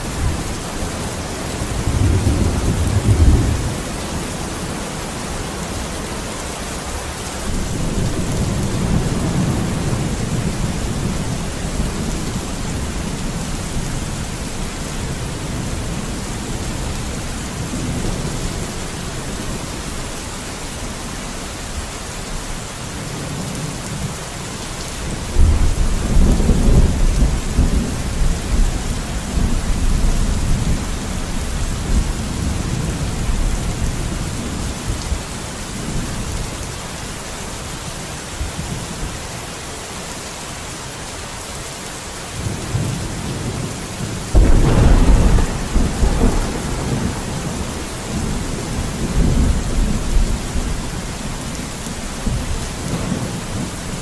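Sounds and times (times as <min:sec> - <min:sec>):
steady rain hiss: 0:00.0 - 0:54.0
rolling thunder: 0:01.6 - 0:04.1, 0:44.3 - 0:51.5
sudden thunderclap: 0:44.3 - 0:50.3.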